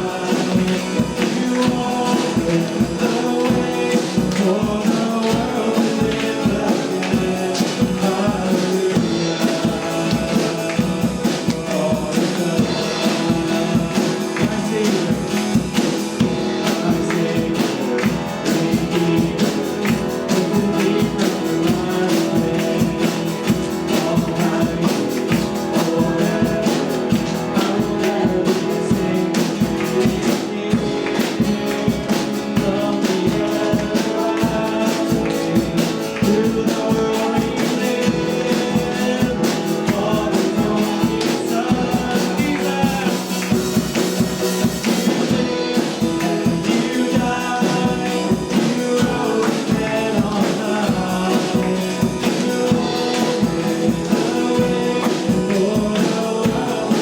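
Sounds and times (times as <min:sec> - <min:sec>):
drum kit beat: 0:00.0 - 0:57.0
gospel worship song by a band: 0:00.0 - 0:57.0
singing: 0:00.0 - 0:57.0.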